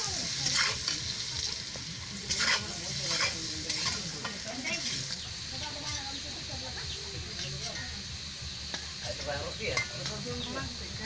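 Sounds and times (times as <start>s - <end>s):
food sizzling in a pan: 0.0s - 11.0s
utensil scraping a pan: 0.3s - 5.2s.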